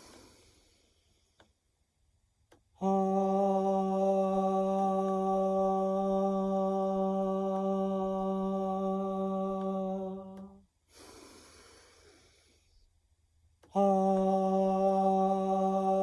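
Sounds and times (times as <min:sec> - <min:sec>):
quiet in-breath: 0:00.0 - 0:01.6, 0:10.8 - 0:13.0
person chanting haaa: 0:02.8 - 0:10.6, 0:13.7 - 0:16.0.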